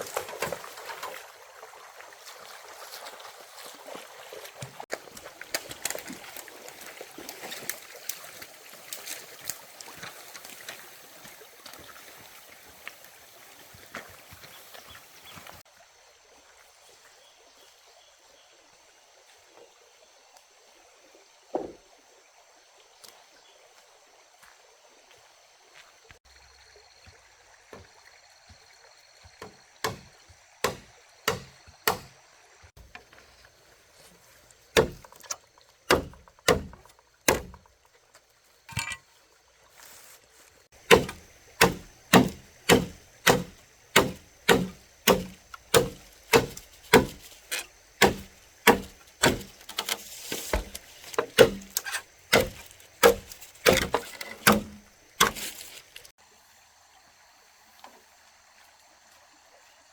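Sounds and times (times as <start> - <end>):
tool striking wood: 29.4 - 32.1, 34.8 - 35.1, 35.9 - 37.6, 40.8 - 55.6.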